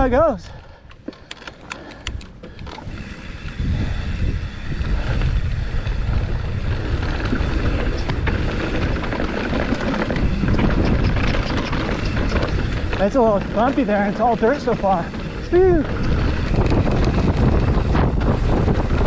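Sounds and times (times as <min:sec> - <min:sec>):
sharp clicks: 0:00.8 - 0:02.7
wind on microphone: 0:02.0 - 0:19.0
tyres rumbling on dirt: 0:02.7 - 0:19.0.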